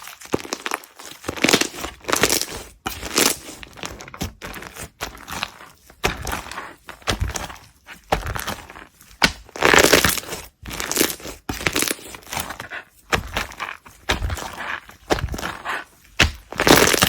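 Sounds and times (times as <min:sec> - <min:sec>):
slime squeezed crackling: 0:08.2 - 0:17.0.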